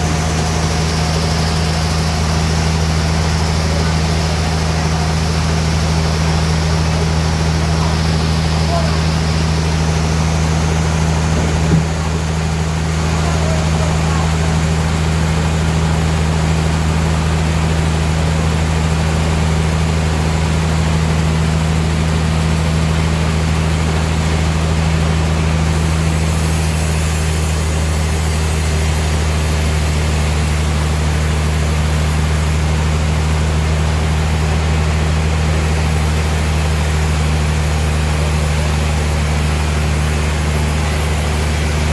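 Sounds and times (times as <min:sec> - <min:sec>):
sawmill machinery humming: 0:00.0 - 0:41.9
short knock: 0:11.3 - 0:12.1.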